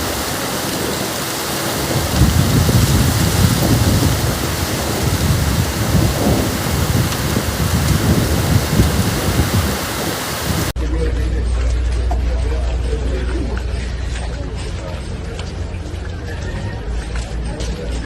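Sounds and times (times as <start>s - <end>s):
heavy rain downpour: 0.0s - 10.8s
low rumble: 0.0s - 10.8s.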